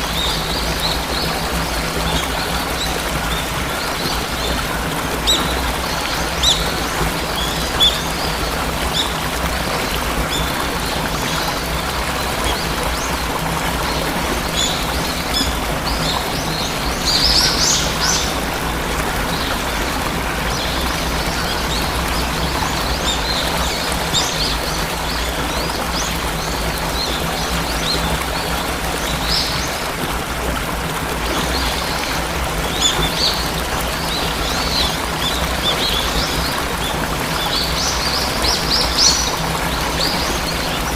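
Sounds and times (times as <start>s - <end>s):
birds chirping: 0.0s - 30.0s
waterfall rushing: 0.0s - 40.9s.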